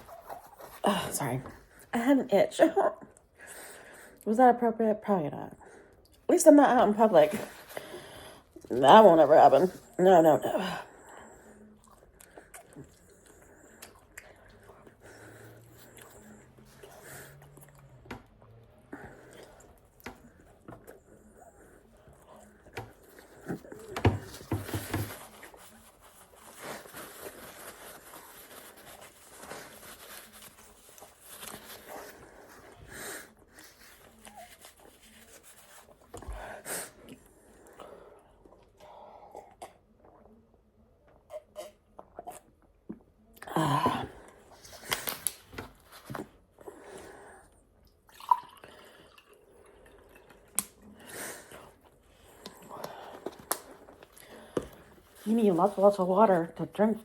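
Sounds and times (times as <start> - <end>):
chewing and mouth noises: 11.6 - 15.0.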